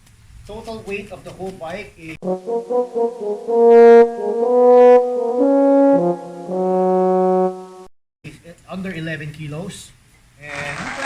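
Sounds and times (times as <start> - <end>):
brass fanfare: 2.2 - 7.9.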